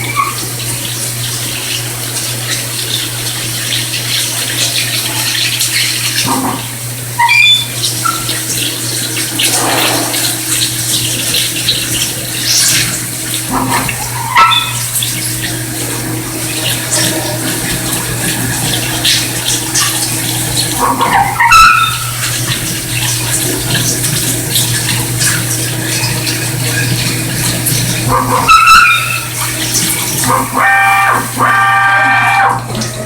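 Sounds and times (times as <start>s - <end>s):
coolant splashing hiss: 0.0s - 33.0s.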